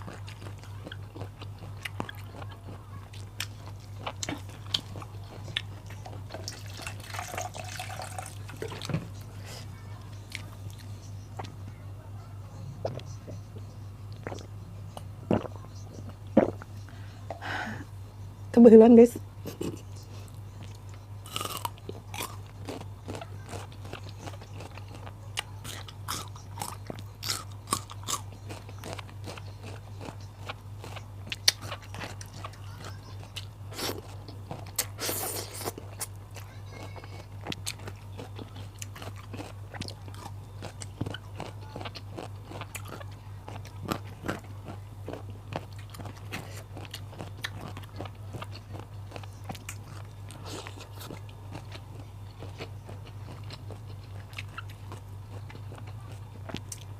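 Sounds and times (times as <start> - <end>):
crunching raw vegetables: 20.6 - 56.9.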